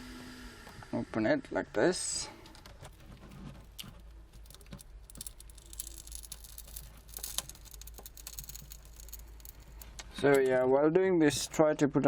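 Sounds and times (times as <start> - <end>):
glass clicks and crackles: 2.6 - 10.6.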